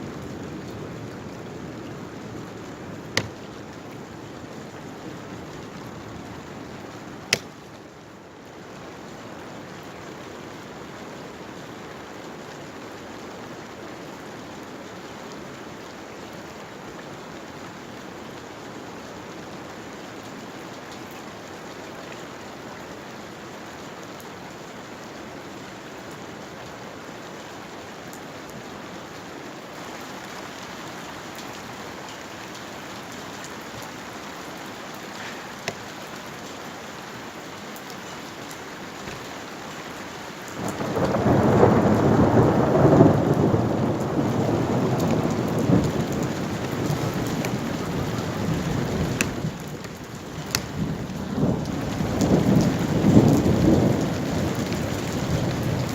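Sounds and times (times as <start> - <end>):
rain falling: 0.0 - 55.9
thunderclap rumbling: 40.6 - 49.8.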